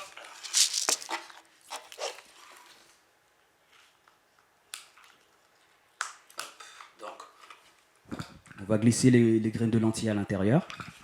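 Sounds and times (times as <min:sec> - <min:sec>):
props rustling and clicking: 0:00.3 - 0:02.0.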